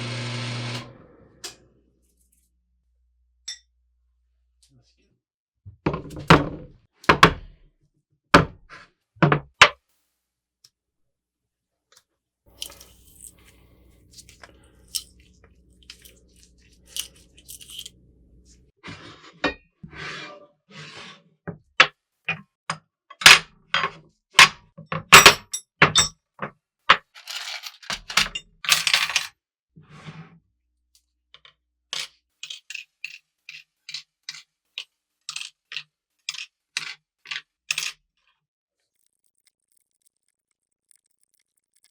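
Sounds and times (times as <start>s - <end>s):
metal parts clinking and knocking: 12.5s - 18.0s, 27.0s - 29.3s, 35.3s - 38.0s.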